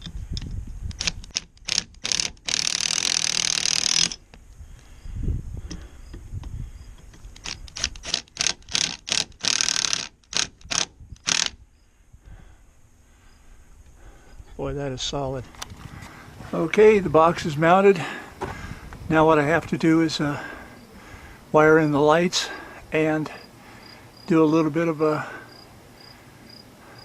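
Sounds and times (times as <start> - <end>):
cordless hammer drill bursts: 1.0 - 4.2, 7.4 - 11.6.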